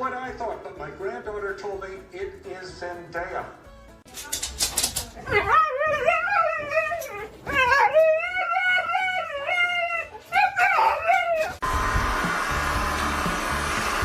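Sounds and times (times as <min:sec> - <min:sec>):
dog howling: 0:05.4 - 0:11.6.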